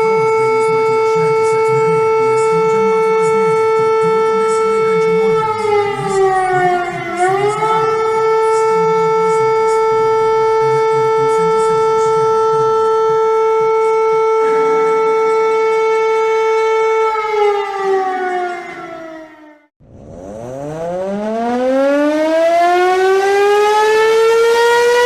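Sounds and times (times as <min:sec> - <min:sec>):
wailing warning siren: 0:00.0 - 0:25.0.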